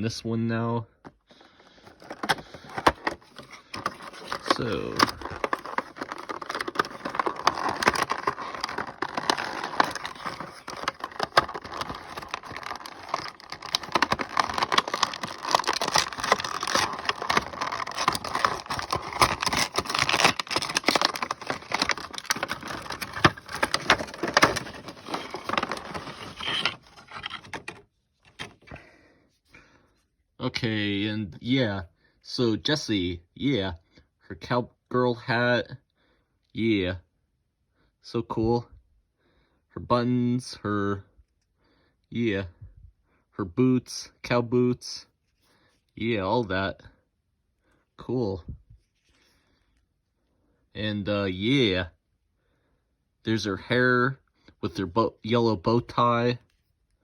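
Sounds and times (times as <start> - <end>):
plastic packaging rustling and crinkling: 1.6 - 28.8.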